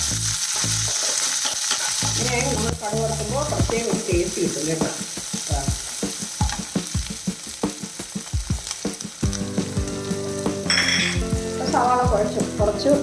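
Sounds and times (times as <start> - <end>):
onions sizzling in hot oil: 0.0 - 13.0
spoon scraping a pan: 0.4 - 2.7.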